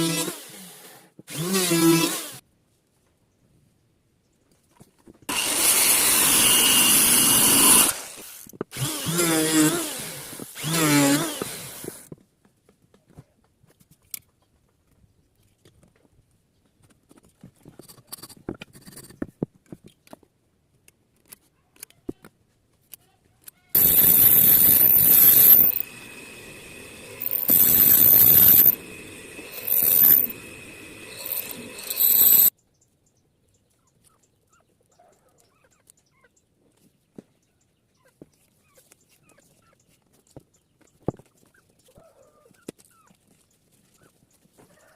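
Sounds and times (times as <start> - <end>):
power tool cutting wood: 0.0 - 2.4, 5.3 - 12.0, 23.8 - 32.5.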